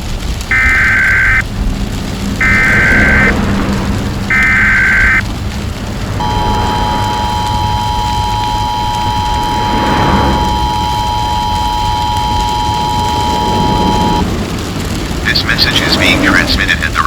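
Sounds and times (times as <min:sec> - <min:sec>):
two-tone attention signal: 0:00.5 - 0:01.4, 0:02.4 - 0:03.3, 0:04.3 - 0:05.2, 0:06.2 - 0:14.2
buzzing digital data bursts: 0:00.5 - 0:01.5, 0:02.4 - 0:03.4, 0:04.3 - 0:05.3, 0:06.2 - 0:14.3.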